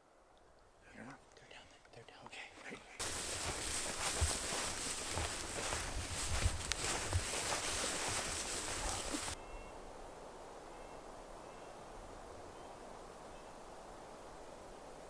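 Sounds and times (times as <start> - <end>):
rushing noise with low thumps: 3.0 - 9.4.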